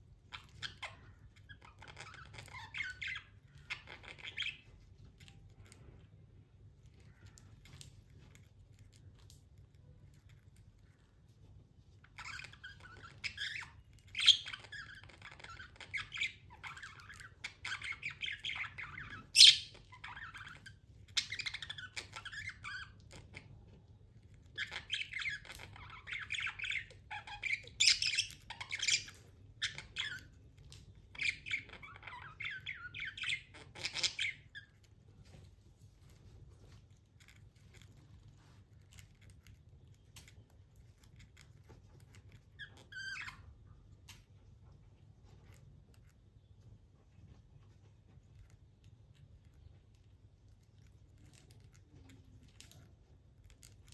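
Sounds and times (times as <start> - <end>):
budgie chirping and chattering: 0.3 - 4.7, 12.1 - 23.5, 24.5 - 34.8
loud budgie squawk: 12.2 - 20.6, 24.6 - 30.3.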